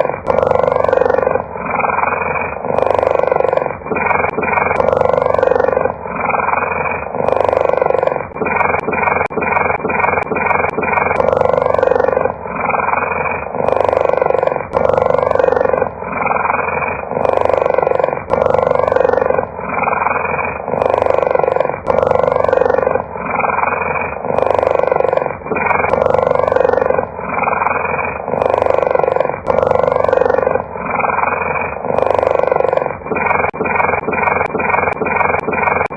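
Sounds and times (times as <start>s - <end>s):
cheetah purring: 0.0s - 35.9s.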